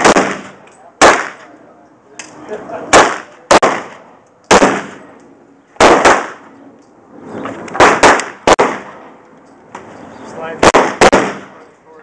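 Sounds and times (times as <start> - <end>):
gunshots with echo: 0.0 - 1.5, 2.9 - 5.0, 5.8 - 6.4, 7.8 - 9.1, 10.6 - 11.6.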